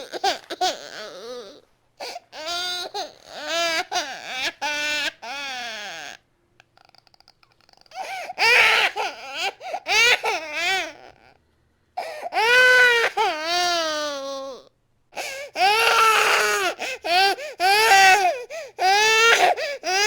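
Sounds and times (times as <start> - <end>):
infant crying: 0.0 - 6.2, 7.9 - 11.4, 12.0 - 20.0.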